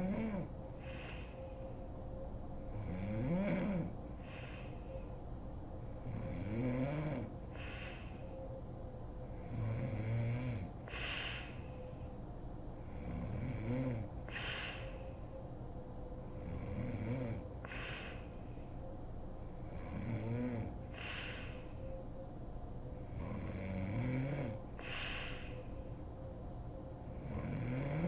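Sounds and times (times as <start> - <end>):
woman snoring: 0.0 - 1.4, 2.7 - 4.8, 6.0 - 8.3, 9.4 - 11.7, 12.9 - 15.0, 16.4 - 18.3, 19.7 - 21.7, 23.1 - 25.6, 27.2 - 28.0.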